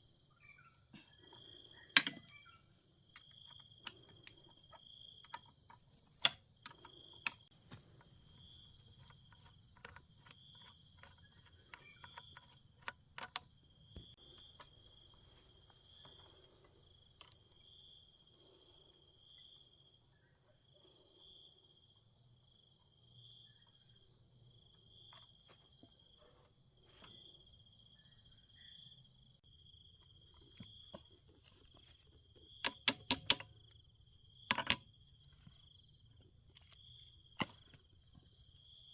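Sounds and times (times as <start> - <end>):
insects chorus: 0.0 - 38.9
clicks and taps on chainsaw: 32.6 - 33.5, 34.5 - 34.8.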